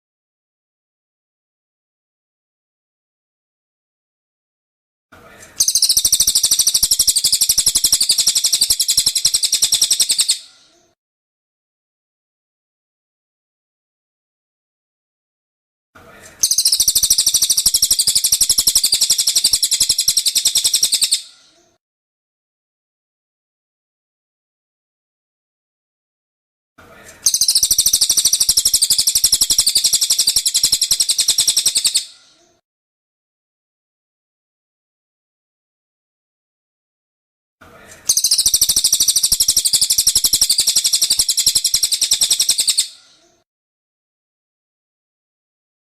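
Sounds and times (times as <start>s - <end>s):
bird trilling: 5.6s - 10.5s, 16.4s - 21.4s, 27.3s - 32.2s, 38.1s - 43.1s.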